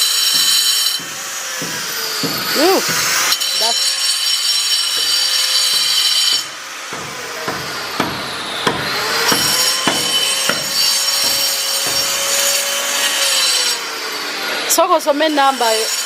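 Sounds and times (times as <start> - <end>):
sharp knocks: 0.0 - 3.5, 4.7 - 13.8
angle grinder cutting stone: 0.0 - 16.0.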